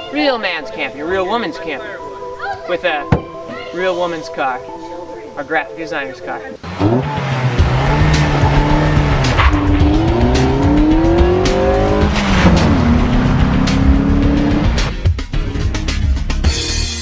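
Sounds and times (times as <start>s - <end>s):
car engine accelerating: 6.6s - 15.1s
background music with a beat: 7.4s - 17.0s.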